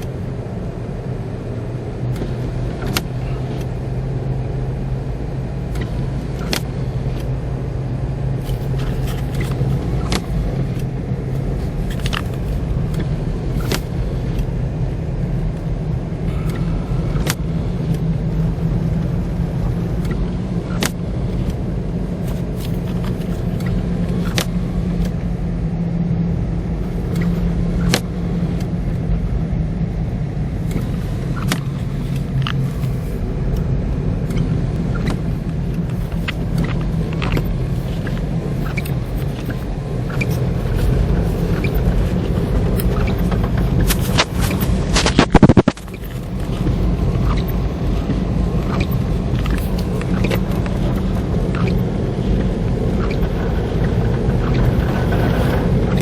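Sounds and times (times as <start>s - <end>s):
car engine humming: 0.0s - 56.0s.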